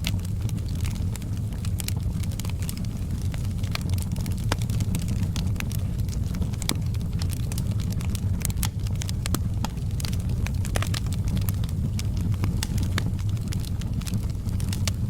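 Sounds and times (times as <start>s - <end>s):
low rumble of flames: 0.0s - 15.0s
wood fire crackling and popping: 0.0s - 15.0s.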